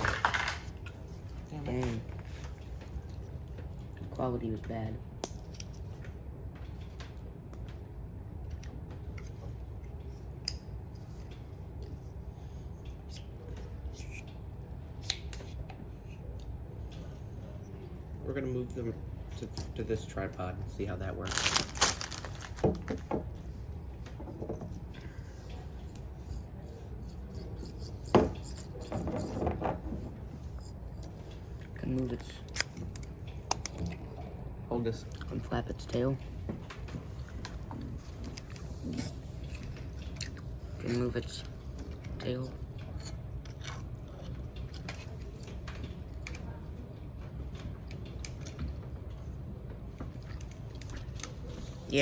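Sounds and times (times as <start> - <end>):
plastic parts clicking and rattling: 0.0 - 0.8, 21.3 - 23.2
handling noise on microphone: 21.3 - 23.1.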